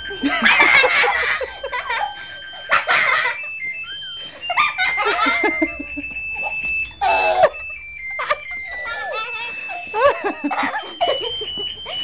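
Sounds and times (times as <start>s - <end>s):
car alarm tones: 0.0s - 12.0s.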